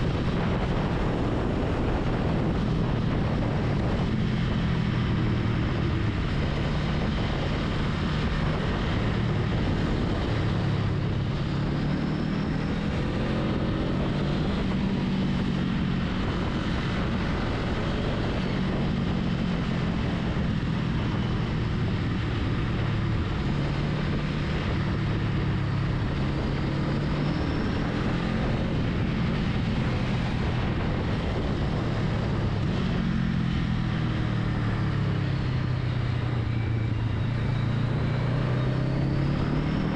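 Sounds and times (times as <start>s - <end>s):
motorcycle engine cruising: 0.0s - 39.9s
wind and road noise: 0.0s - 39.9s.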